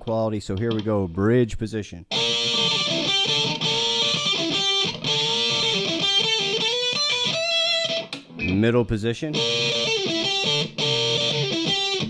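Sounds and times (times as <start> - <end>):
distorted electric guitar lead: 2.1 - 8.7, 9.3 - 12.0.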